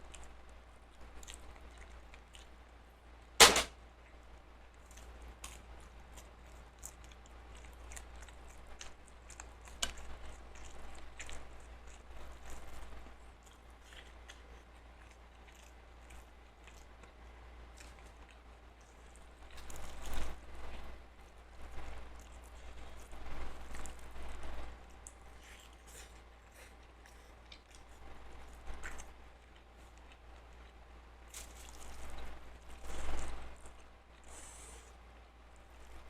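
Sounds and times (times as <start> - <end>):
quiet chewing: 0.0 - 3.4, 4.0 - 36.0
loud sharp knock: 3.4 - 3.7.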